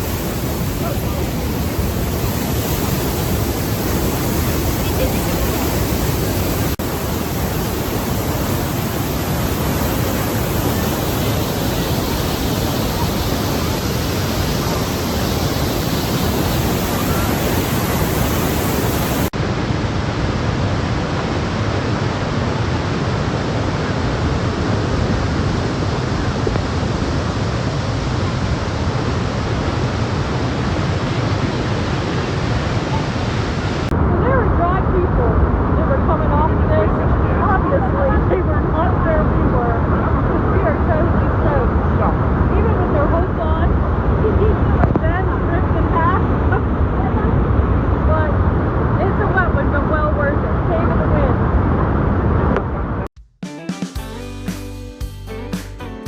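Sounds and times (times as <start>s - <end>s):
waterfall roaring: 0.0s - 53.1s.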